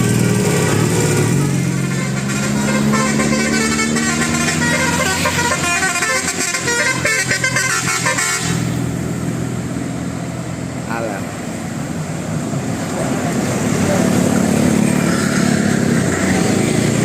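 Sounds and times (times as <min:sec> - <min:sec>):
multi-tone bus horn melody: 0:00.0 - 0:09.0.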